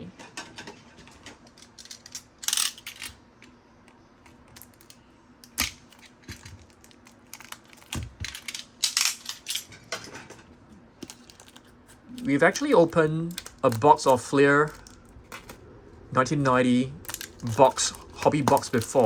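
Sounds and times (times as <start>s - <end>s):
packaging rustling and crinkling: 17.0s - 19.0s.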